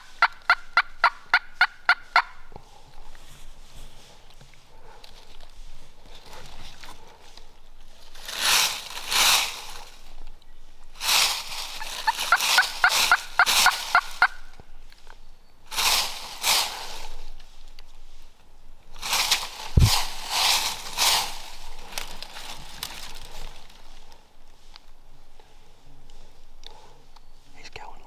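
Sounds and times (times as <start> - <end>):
turkey gobbling: 0.0 - 2.5, 11.7 - 14.6.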